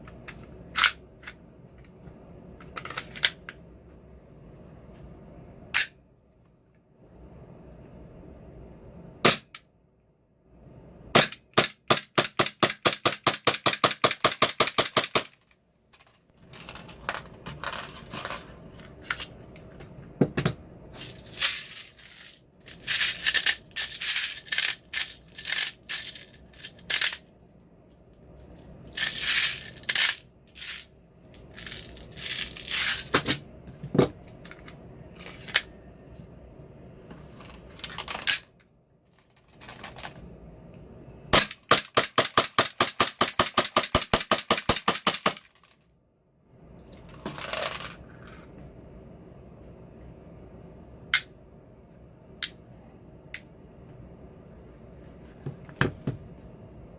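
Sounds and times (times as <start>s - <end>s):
sharp clicks and rattles: 21.0s - 27.2s, 29.0s - 30.8s.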